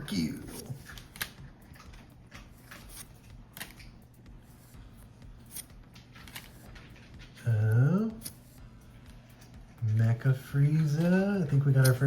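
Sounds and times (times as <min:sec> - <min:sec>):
cards rustling: 0:00.1 - 0:08.6.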